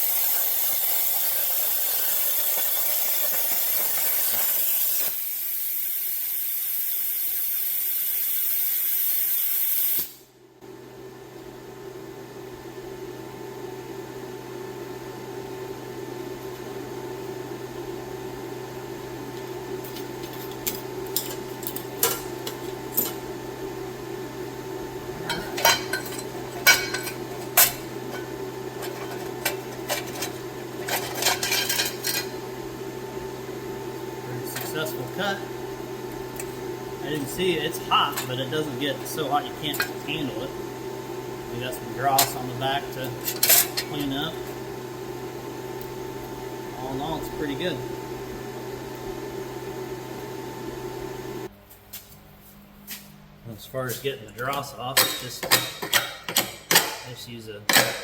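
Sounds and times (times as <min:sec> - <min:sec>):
plasma torch cutting steel: 0:00.0 - 0:10.3
steady low hum: 0:10.3 - 0:58.0.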